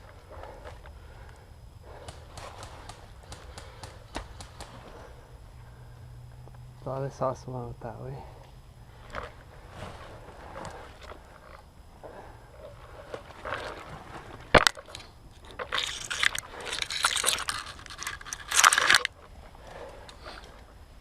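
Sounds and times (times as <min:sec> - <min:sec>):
scraping and crunching: 0:12.6 - 0:19.6.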